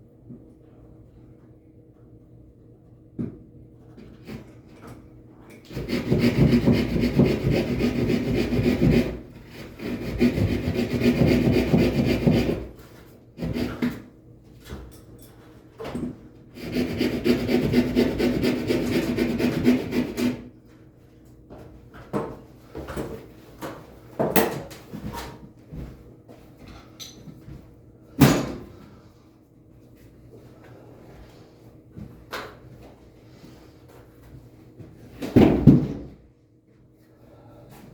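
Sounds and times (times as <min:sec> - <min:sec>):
power tool sawing scrape: 0:05.7 - 0:12.7, 0:16.6 - 0:20.4.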